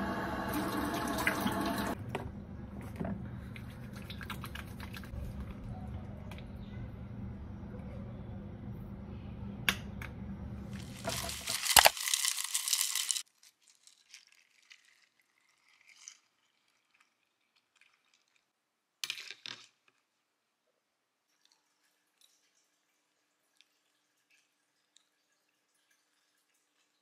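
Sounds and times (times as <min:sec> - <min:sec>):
low machine hum: 0:00.0 - 0:11.6
drips and ticks: 0:21.3 - 0:27.0.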